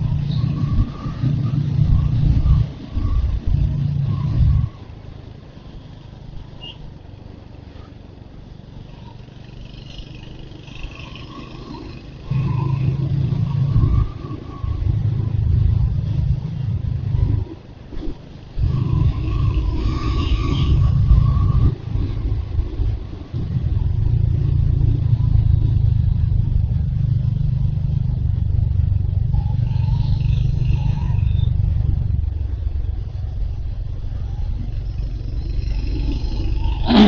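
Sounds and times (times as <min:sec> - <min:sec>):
motorcycle engine running: 0:00.0 - 0:17.2
road and wind noise: 0:00.0 - 0:37.0.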